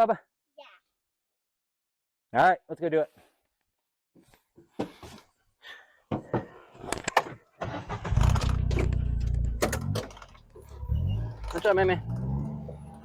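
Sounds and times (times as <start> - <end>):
utility vehicle engine starting: 7.6 - 13.0.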